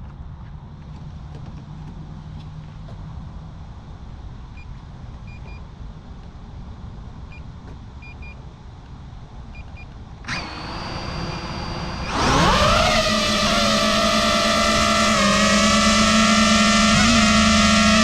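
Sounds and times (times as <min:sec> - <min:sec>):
drone motors whining: 0:10.3 - 0:18.0.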